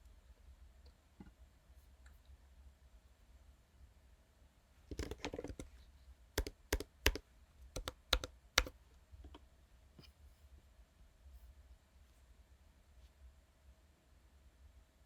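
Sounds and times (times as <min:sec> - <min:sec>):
typing on computer keyboard: 0:04.9 - 0:05.7, 0:06.4 - 0:07.2, 0:07.8 - 0:08.7.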